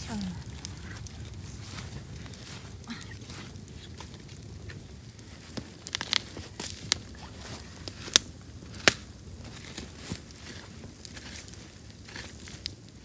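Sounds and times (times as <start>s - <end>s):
campfire crackling and popping: 0.0s - 13.0s.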